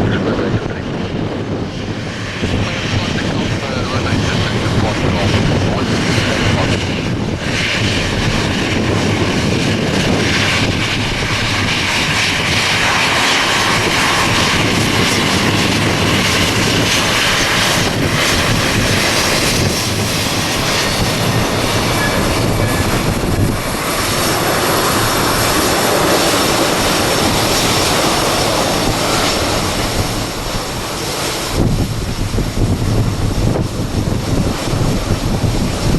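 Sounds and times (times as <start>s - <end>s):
jet engines roaring: 0.0s - 35.9s
thin high whine: 21.6s - 23.3s.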